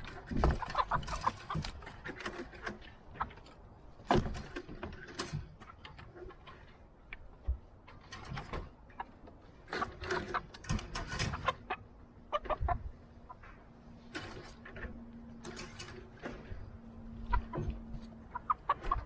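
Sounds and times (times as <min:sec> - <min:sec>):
knocks and clattering: 0:00.0 - 0:06.7
chickens clucking: 0:00.0 - 0:19.0.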